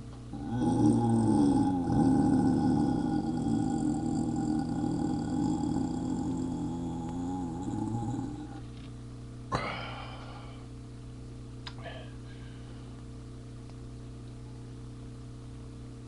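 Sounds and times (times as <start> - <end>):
electrical hum: 0.0 - 16.0
man belching: 0.3 - 8.6.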